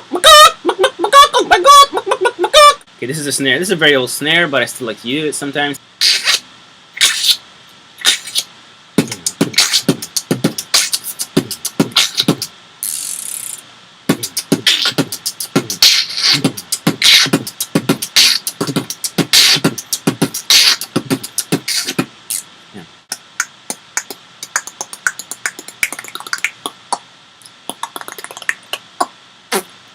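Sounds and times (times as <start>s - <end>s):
beatbox rhythm: 6.0s - 6.4s, 7.0s - 7.4s, 8.0s - 29.8s
beatbox hiss: 6.0s - 7.4s, 8.0s - 29.8s.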